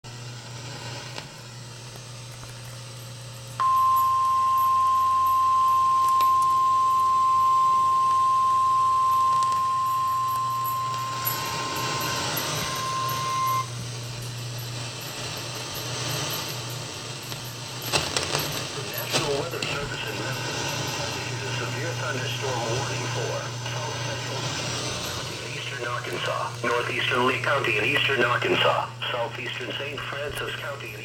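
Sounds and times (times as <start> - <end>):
low hum and receiver hiss: 0.1 - 31.0
high-pitched alert tone: 9.1 - 13.7.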